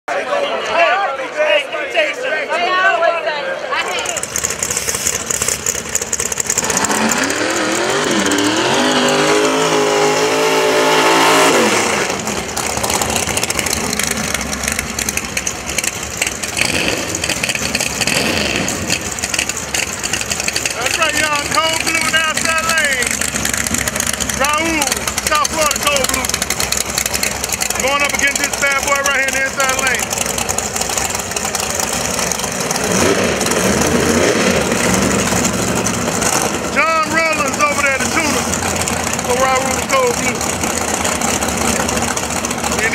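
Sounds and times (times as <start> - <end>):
track noise: 0.1 - 42.9
drag car engine at full throttle: 3.7 - 42.9
rough noisy din: 3.7 - 42.9.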